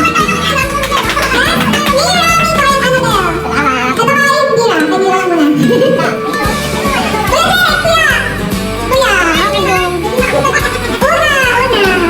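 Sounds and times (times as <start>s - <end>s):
music with singing: 0.0s - 12.0s
steady bass line: 6.4s - 12.0s.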